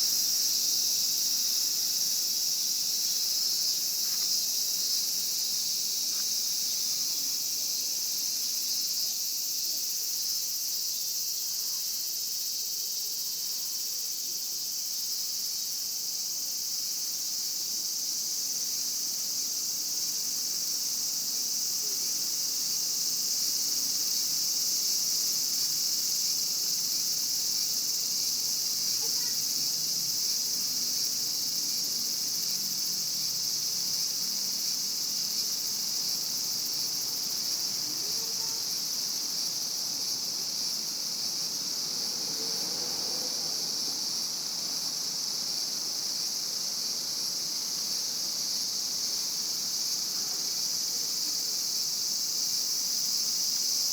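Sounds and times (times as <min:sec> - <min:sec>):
cicadas buzzing: 0:00.0 - 0:53.9.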